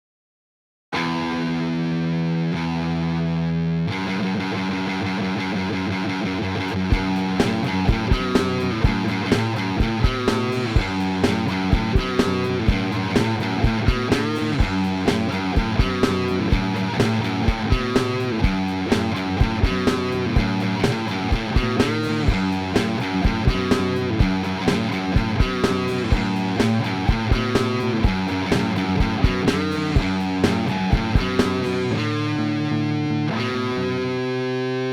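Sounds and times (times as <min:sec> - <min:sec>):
rock guitar music: 0:01.0 - 0:34.9
drum beat with low kick: 0:06.9 - 0:32.0.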